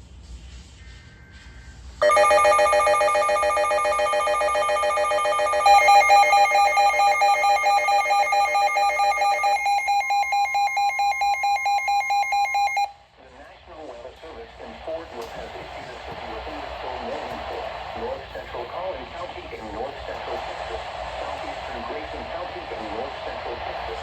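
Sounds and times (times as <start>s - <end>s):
pulsing electronic alarm beep: 2.0s - 12.9s
steady alarm tone: 2.0s - 12.9s.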